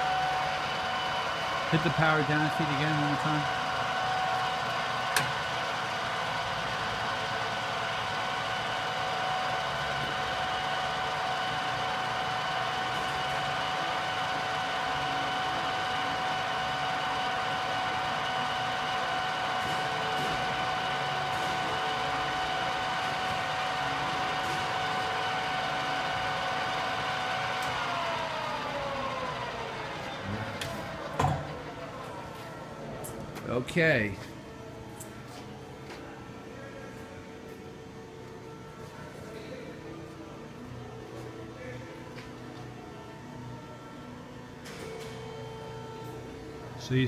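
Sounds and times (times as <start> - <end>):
drill press humming with gear whine: 0.0 - 47.0.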